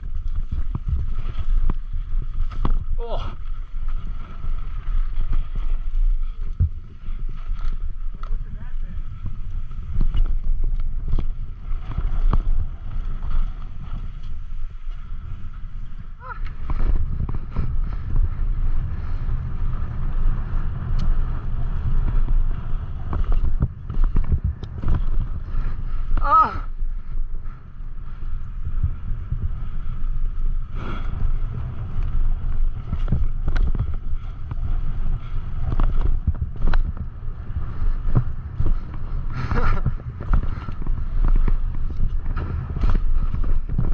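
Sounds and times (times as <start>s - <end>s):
bike knocks and clatter: 0.0s - 3.1s, 21.8s - 26.4s, 32.0s - 34.7s, 35.6s - 43.9s
bike clicks and rattles: 0.0s - 43.9s
wind buffeting microphone: 0.0s - 43.9s.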